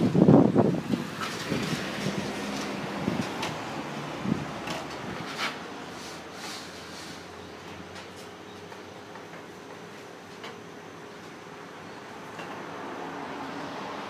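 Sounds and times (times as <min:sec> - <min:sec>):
strong wind gusting: 0:00.0 - 0:05.3.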